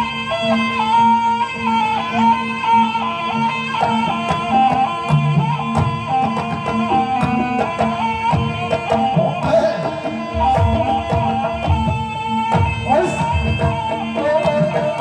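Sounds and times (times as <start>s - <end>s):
gamelan music: 0.0s - 15.0s
drum strikes: 10.3s - 14.1s.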